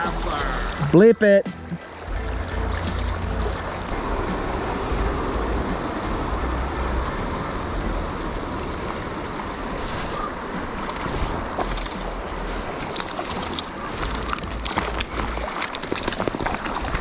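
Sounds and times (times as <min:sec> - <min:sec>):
low rumble: 0:00.0 - 0:10.0, 0:11.0 - 0:15.5
river water rushing: 0:00.0 - 0:17.0.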